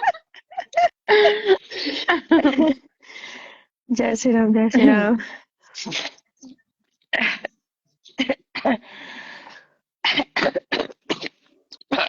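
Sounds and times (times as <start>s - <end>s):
drawn-out breath: 3.0s - 3.8s, 8.8s - 9.8s
woman coughing hard: 8.2s - 8.8s, 10.0s - 12.0s.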